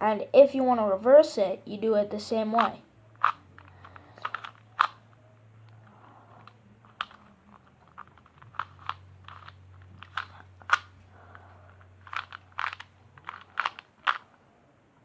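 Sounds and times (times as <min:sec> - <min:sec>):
plastic puzzle cube clicking: 0:02.6 - 0:05.1, 0:06.4 - 0:11.4, 0:12.0 - 0:14.3.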